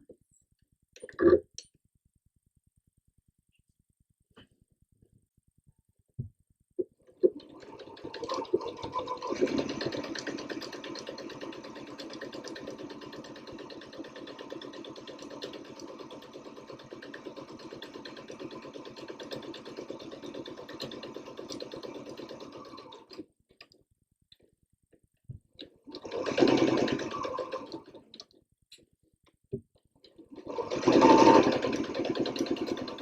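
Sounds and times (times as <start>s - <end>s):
sewing machine stitching: 7.1s - 23.2s, 25.8s - 28.2s, 30.2s - 33.0s.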